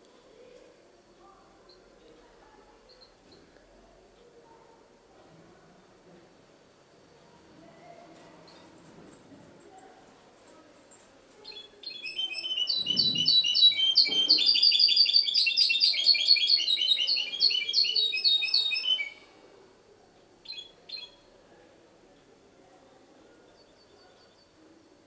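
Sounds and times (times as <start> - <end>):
bird singing twittering song: 11.4 - 19.3, 20.4 - 21.3
short bird notes: 11.5 - 19.2.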